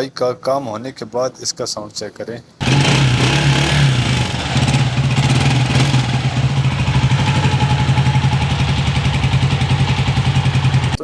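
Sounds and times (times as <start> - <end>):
motorcycle engine idling: 2.6 - 11.0.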